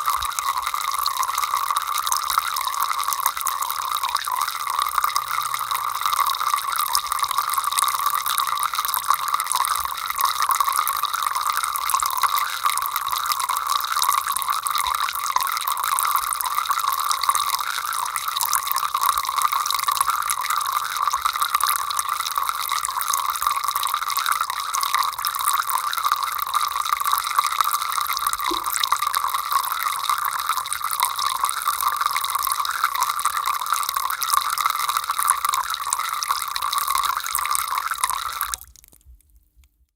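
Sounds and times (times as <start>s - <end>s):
water running from a tap: 27.7s - 38.9s.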